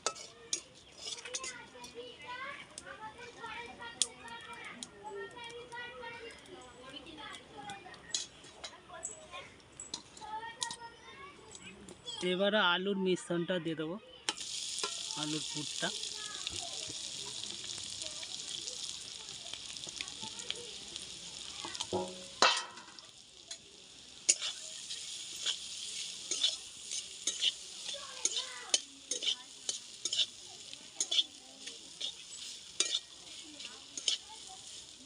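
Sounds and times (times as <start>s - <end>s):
spatula scraping and knocking pan: 0.0s - 1.6s, 24.2s - 34.8s
food sizzling in hot oil: 0.0s - 7.0s, 14.3s - 35.0s.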